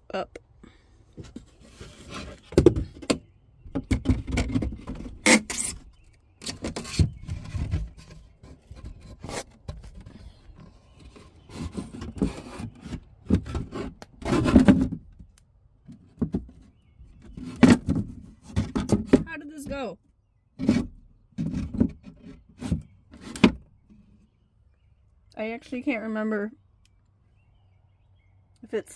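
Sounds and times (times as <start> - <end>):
parts scraping and rubbing: 1.2 - 3.2, 3.9 - 15.1.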